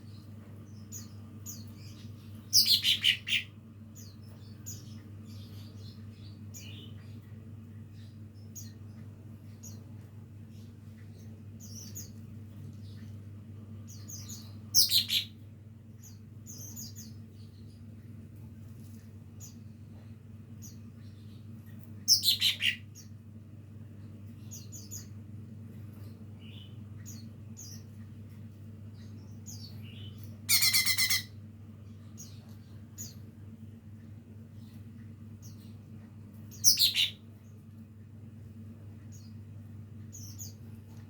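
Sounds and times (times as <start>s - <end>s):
steady low hum: 0.0s - 41.0s
bird twittering: 2.5s - 3.5s, 14.1s - 15.3s, 22.1s - 23.0s, 29.9s - 31.3s, 36.5s - 37.2s
loud short bird phrases: 30.5s - 31.3s.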